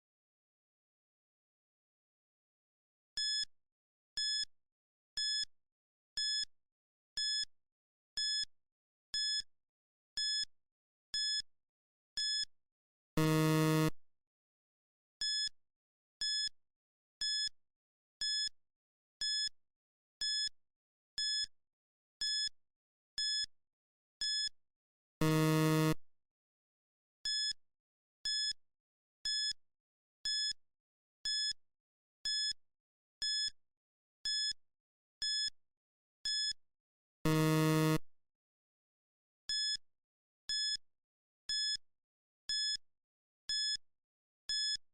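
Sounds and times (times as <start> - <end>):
low buzzer tone: 13.2 - 14.0, 25.2 - 26.0, 37.3 - 38.0.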